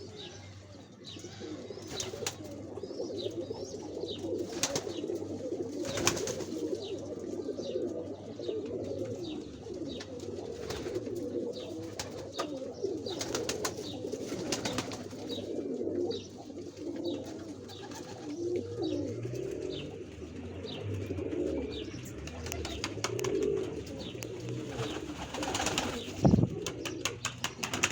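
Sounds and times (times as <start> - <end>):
pigeons cooing: 0.0 - 27.9.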